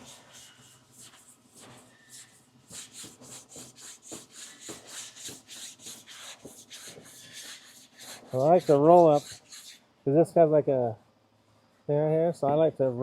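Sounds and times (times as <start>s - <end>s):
sandpaper rubbing back and forth: 0.0s - 9.8s.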